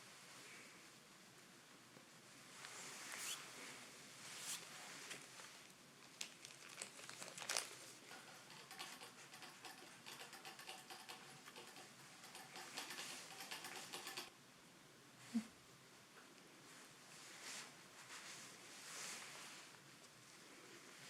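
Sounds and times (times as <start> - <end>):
kittens pattering and rustling: 4.8 - 14.3.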